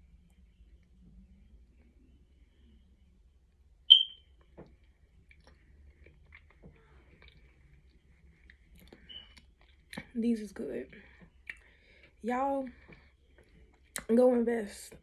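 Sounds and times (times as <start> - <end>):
short high electronic beep: 3.9 - 4.2.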